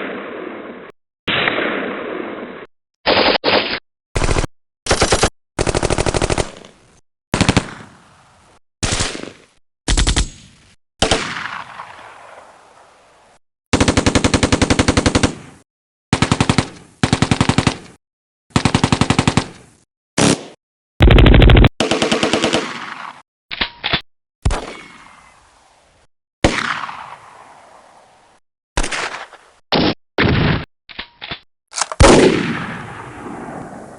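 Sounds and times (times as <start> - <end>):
machine-gun bursts: 4.2 - 6.7, 21.0 - 22.6.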